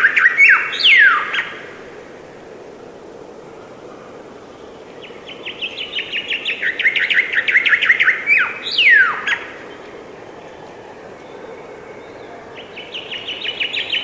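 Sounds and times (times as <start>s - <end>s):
songbird trilling: 0.0s - 1.6s, 4.7s - 9.9s, 11.2s - 14.0s
background hiss: 0.0s - 14.0s.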